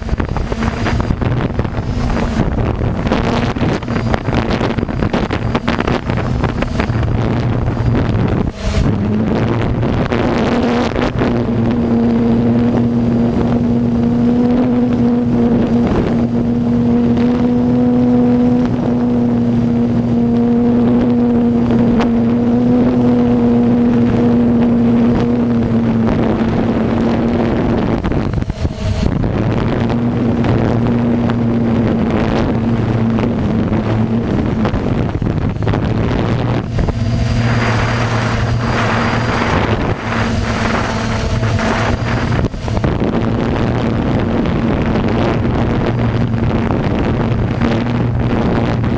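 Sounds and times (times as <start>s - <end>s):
diesel harvest machinery droning: 0.0s - 48.9s
loud rushing hiss: 36.6s - 43.4s.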